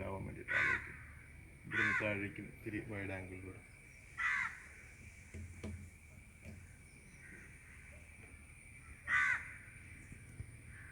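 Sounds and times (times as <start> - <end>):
crow cawing: 0.5 - 2.1, 4.2 - 4.8, 9.1 - 9.7
faint knock: 5.3 - 6.7.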